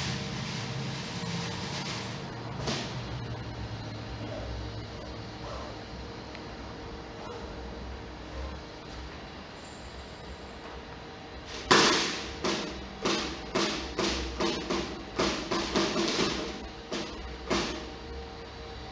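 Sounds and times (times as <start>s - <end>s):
foley props struck or shaken: 11.5s - 18.0s.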